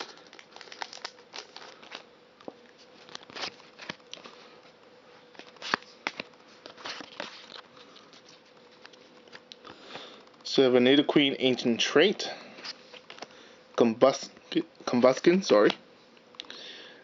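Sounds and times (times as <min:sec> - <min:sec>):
foil wrapper crinkling: 0:00.0 - 0:02.1, 0:02.8 - 0:04.4
faint steady hum: 0:00.0 - 0:17.0
cards rustling and clicking: 0:02.7 - 0:04.4, 0:05.3 - 0:10.4.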